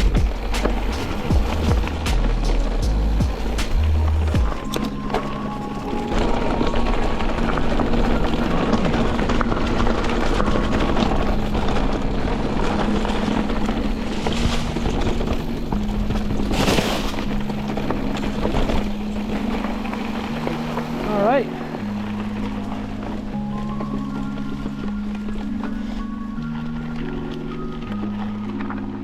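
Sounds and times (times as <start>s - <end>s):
background music: 0.0s - 29.0s
bike tyres on dirt: 0.0s - 29.0s.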